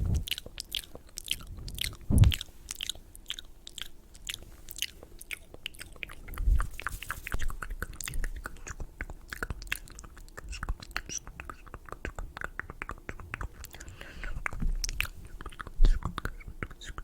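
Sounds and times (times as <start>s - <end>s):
wet mouth clicks and smacks: 0.0s - 17.0s
soft low thump: 1.5s - 2.4s.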